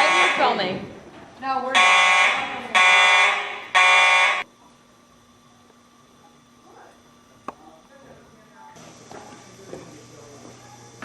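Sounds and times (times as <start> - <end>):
fire alarm horns blasting: 0.0 - 0.7, 1.7 - 4.5.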